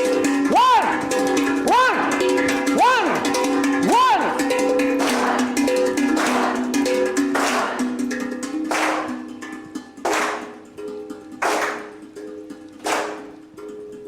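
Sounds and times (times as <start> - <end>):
group hand clap: 0.1 - 10.7, 11.4 - 12.1, 12.8 - 13.5.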